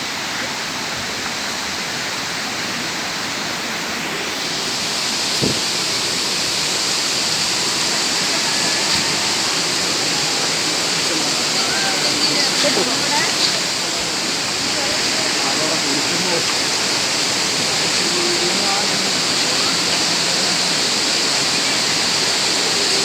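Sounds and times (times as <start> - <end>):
waterfall rushing: 0.0 - 23.0
short knock: 5.4 - 5.7.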